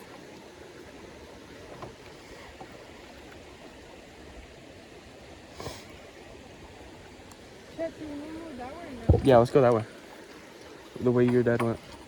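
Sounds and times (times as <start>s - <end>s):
river water rushing: 0.0s - 12.0s.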